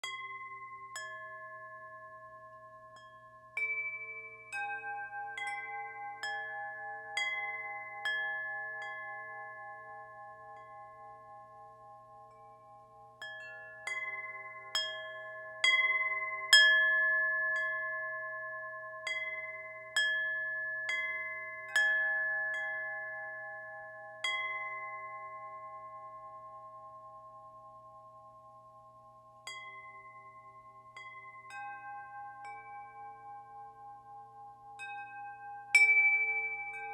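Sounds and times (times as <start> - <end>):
wind chimes ringing: 29.5 - 36.9.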